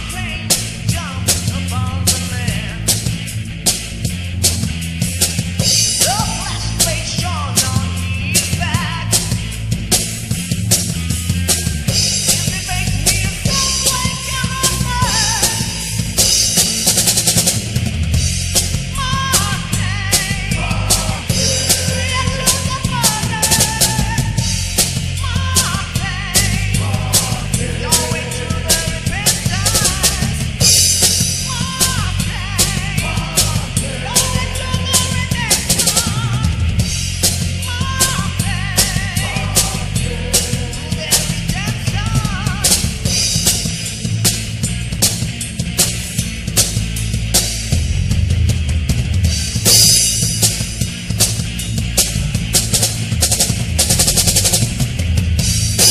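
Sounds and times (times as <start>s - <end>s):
heavy metal band playing: 0.0s - 55.9s.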